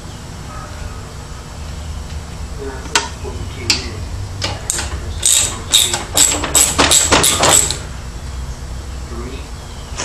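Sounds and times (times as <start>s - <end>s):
ratchet wrench clicking: 4.7s - 7.8s.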